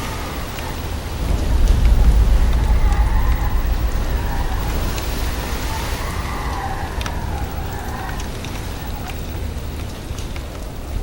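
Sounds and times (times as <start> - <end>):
rain hiss: 0.0 - 11.0
deep thunder rumble: 0.9 - 9.4
faint wavering wails: 1.2 - 9.1.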